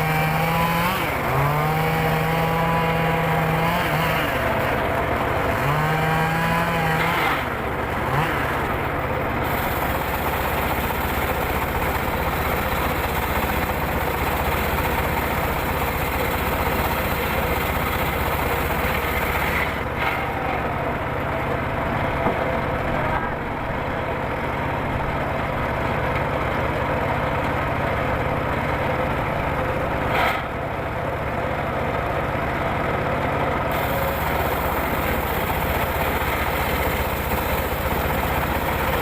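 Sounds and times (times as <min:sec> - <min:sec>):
circular saw sawing logs: 0:00.0 - 0:22.4, 0:29.5 - 0:31.0, 0:33.7 - 0:39.0.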